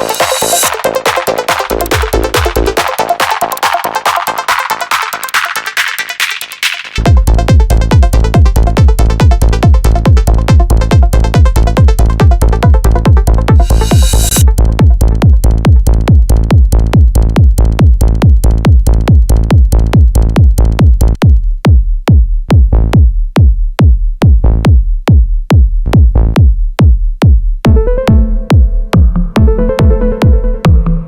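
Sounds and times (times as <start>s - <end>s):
pitched synth riff: 0.0s - 3.2s, 7.0s - 14.5s, 27.7s - 31.0s
fuller techno layer: 0.0s - 31.0s
techno kick drum: 0.0s - 31.0s.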